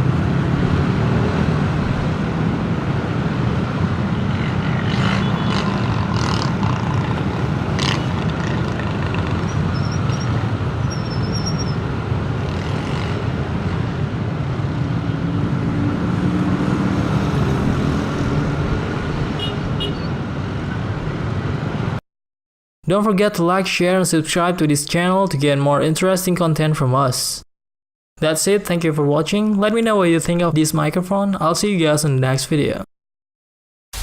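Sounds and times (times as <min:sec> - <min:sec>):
road traffic rumble: 0:00.0 - 0:22.0
vehicle engine hum: 0:00.0 - 0:22.0.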